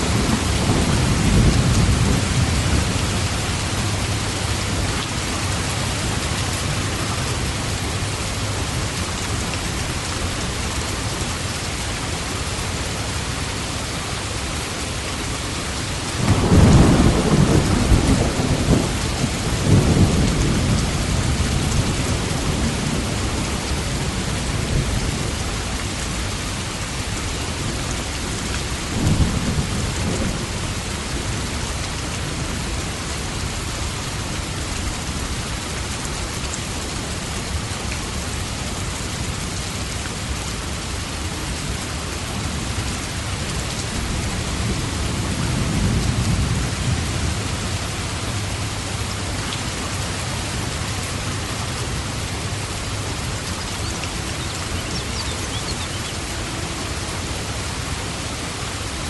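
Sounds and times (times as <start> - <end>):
thunder rumbling: 0.0 - 10.0, 16.2 - 25.4
heavy rain: 0.0 - 59.0.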